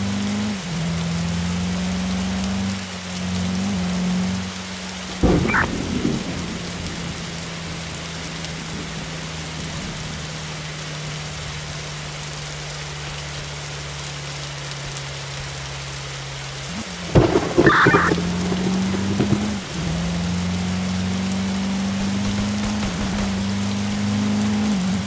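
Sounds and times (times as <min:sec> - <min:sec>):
steady rain falling: 0:00.0 - 0:25.0
loud knocks: 0:05.1 - 0:10.2, 0:17.2 - 0:21.0, 0:21.6 - 0:24.2.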